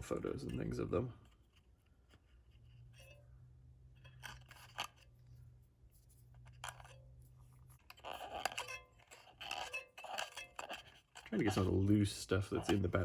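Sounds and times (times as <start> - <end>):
scraping in battery compartment: 4.0 - 5.5, 6.1 - 13.0.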